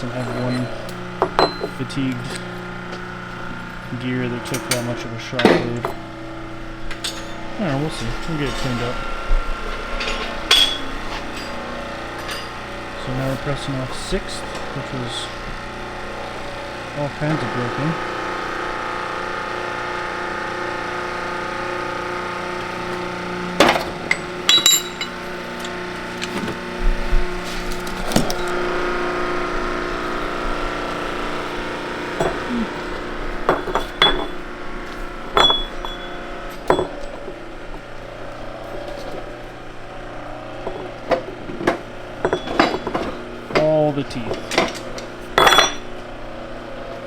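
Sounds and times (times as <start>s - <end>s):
metallic clinks and knocks: 0.0s - 2.7s, 6.9s - 7.5s, 9.7s - 11.6s, 23.6s - 26.6s, 32.2s - 37.2s, 40.6s - 43.6s, 44.2s - 45.9s
hydraulic press humming: 0.0s - 47.0s.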